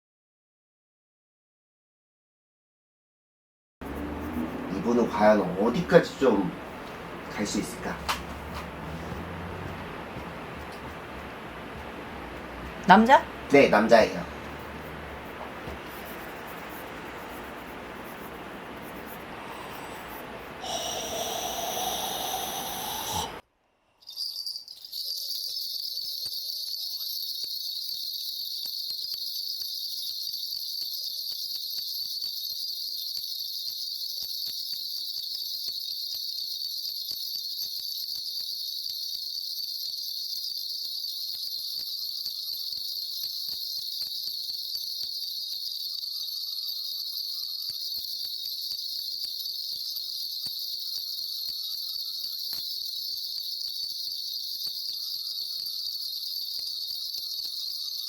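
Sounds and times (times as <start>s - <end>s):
hiss-like noise: 3.8s - 23.4s
insects chirring: 3.8s - 58.0s.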